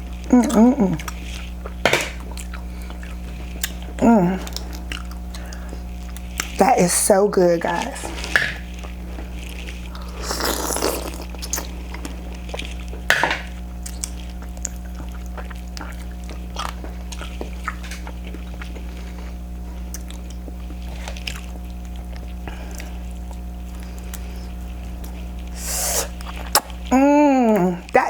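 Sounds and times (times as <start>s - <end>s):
wet chewing and smacking: 0.0s - 6.6s, 7.8s - 27.7s
low electrical hum: 0.0s - 28.0s
sharp mouth clicks: 25.6s - 26.8s.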